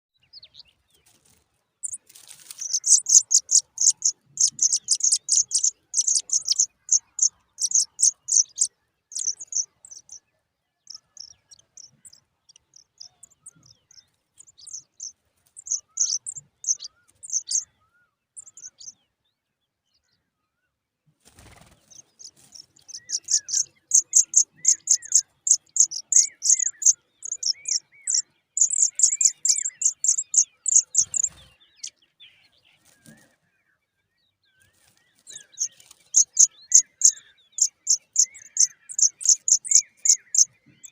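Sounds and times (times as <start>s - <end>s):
nestlings begging cheeps: 1.8s - 10.2s, 14.5s - 17.6s, 21.4s - 31.5s, 35.4s - 40.9s.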